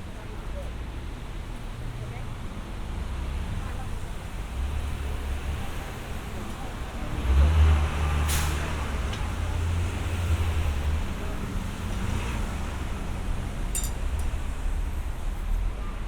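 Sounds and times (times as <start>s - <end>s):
road noise: 0.0s - 16.0s
vehicle engine rumble passing: 1.2s - 15.8s.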